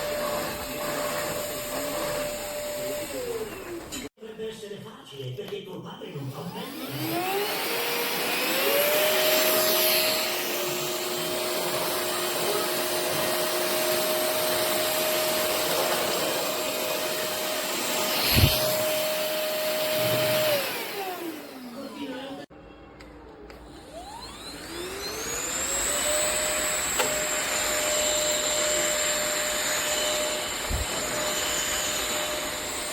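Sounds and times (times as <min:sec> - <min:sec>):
stick vacuum motor whine: 0:00.0 - 0:04.1, 0:06.5 - 0:22.4, 0:23.6 - 0:32.9
rushing air: 0:18.1 - 0:19.0.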